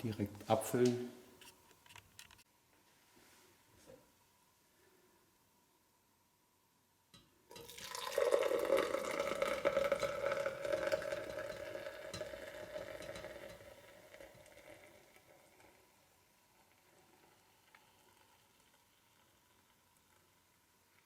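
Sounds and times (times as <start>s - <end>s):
beer pouring and fizzing: 7.5s - 21.0s.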